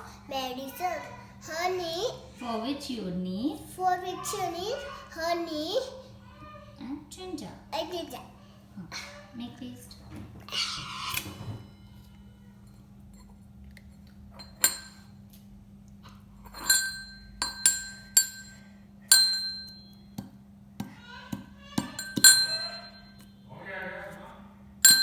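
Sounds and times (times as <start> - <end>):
pestle pounding in mortar: 19.2 - 23.0.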